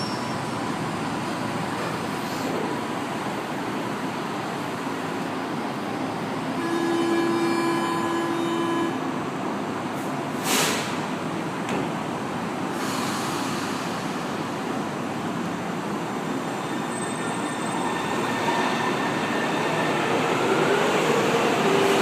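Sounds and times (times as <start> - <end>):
short sharp hiss: 10.4 - 11.0.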